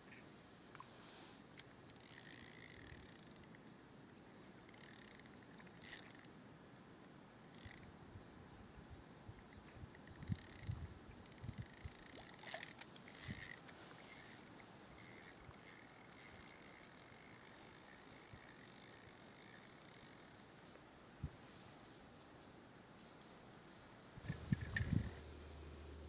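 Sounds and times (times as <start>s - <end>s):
faint steady hiss: 0.0s - 2.0s, 12.8s - 26.0s
fishing reel clicking and rattling: 1.8s - 3.7s, 4.6s - 6.3s, 7.4s - 7.9s, 10.0s - 20.4s, 24.2s - 26.0s.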